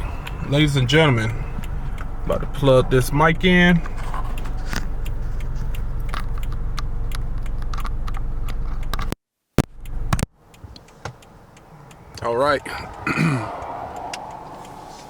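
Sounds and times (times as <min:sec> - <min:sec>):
car cabin idle rumble: 0:00.0 - 0:09.1.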